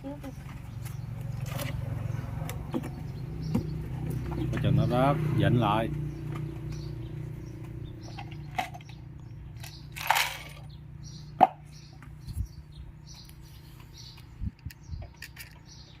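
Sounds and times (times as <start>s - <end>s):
clicks of fan parts: 13.2s - 16.0s.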